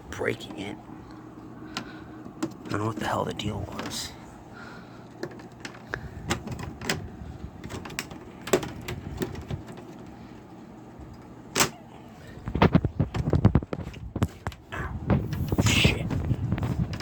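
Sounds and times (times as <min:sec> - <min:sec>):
plastic clips clicking and cracking: 0:07.6 - 0:09.8.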